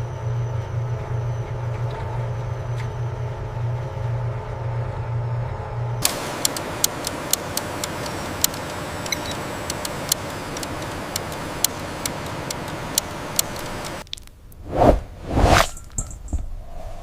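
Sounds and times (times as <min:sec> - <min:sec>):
sharp irregular clicks: 0:06.0 - 0:14.3.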